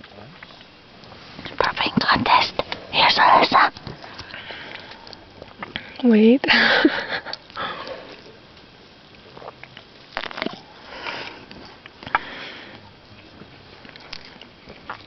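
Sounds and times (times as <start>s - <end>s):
rustles: 0.0s - 15.0s
person sniffing and breathing: 12.1s - 12.9s.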